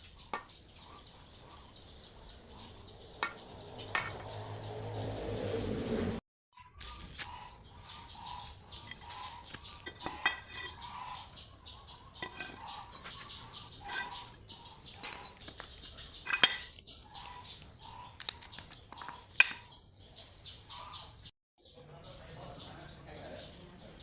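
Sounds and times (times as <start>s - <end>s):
metal clinks and knocks: 3.2s - 4.4s, 8.7s - 11.0s, 12.2s - 16.8s, 17.9s - 19.8s.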